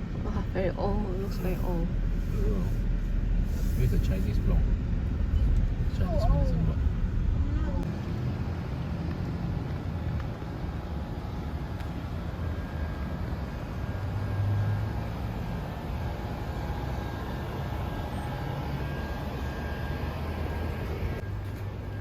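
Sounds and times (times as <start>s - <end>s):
motor vehicle rumble: 0.0s - 22.0s.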